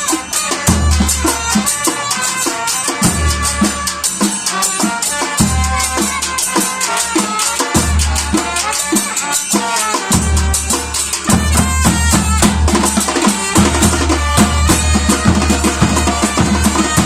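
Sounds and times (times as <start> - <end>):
percussion band playing: 0.0 - 17.0.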